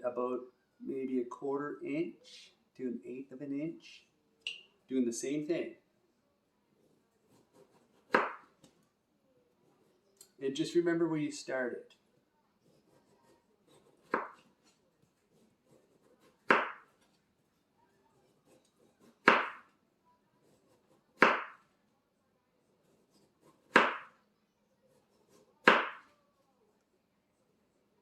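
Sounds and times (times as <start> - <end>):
knife chopping melon: 7.3 - 8.6, 12.6 - 17.0, 18.2 - 19.7, 20.4 - 21.6, 22.8 - 24.2, 25.2 - 26.0.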